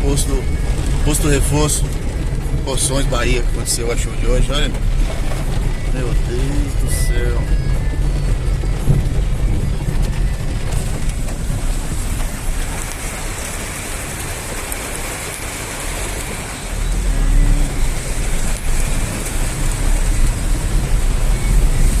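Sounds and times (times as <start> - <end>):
heavy rain pouring: 0.0 - 22.0
wind buffeting microphone: 4.8 - 14.3.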